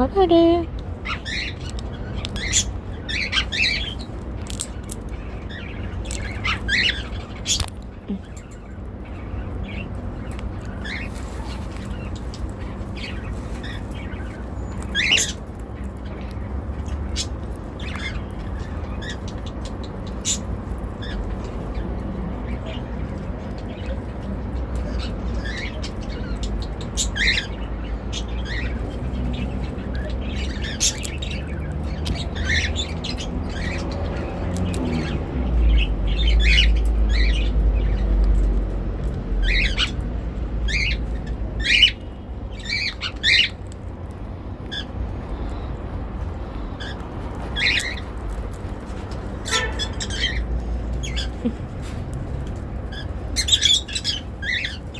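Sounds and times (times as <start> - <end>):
parrot cracking seeds: 3.6 - 5.4, 6.0 - 6.6, 7.4 - 7.9, 46.8 - 49.4
parrot squawks and chirps: 49.4 - 51.4, 52.9 - 54.9.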